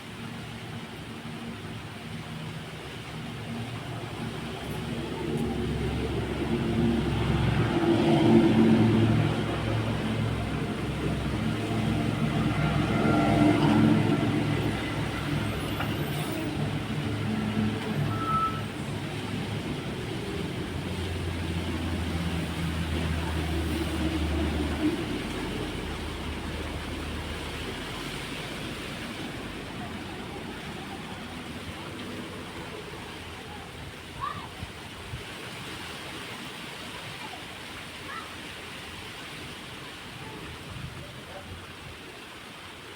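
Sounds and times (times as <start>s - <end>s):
road traffic engines humming: 0.0s - 34.0s.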